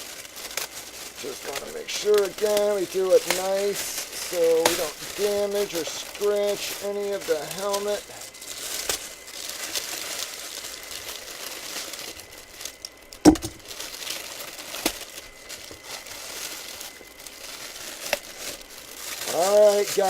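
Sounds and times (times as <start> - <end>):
plastic bag crinkling: 0.0 - 20.0
sharp knock: 13.2 - 13.6.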